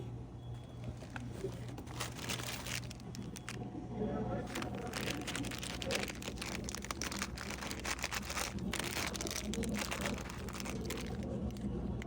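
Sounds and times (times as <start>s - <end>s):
low steady hum: 0.0s - 12.0s
plastic snack wrappers crinkling: 0.8s - 3.6s, 4.4s - 12.0s.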